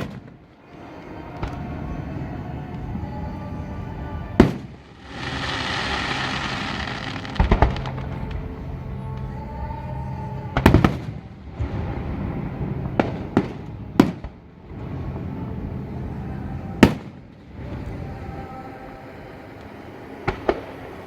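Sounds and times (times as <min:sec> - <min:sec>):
low background rumble: 0:01.3 - 0:19.6
fireworks bangs: 0:04.4 - 0:08.6.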